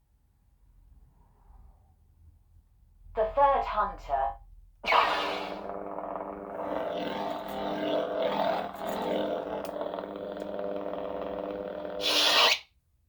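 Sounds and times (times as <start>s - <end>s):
lightsaber blade hum: 4.9s - 12.6s.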